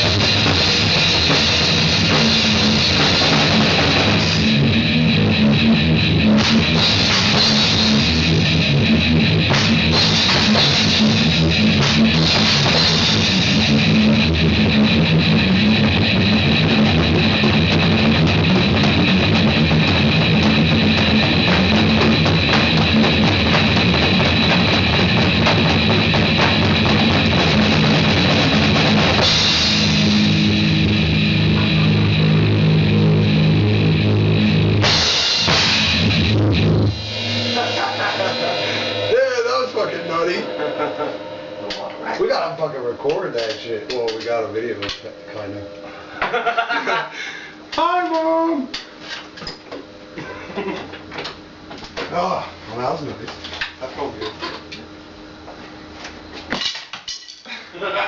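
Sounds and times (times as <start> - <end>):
drums and cymbals: 0.0 - 46.2
electric guitar: 0.0 - 47.7.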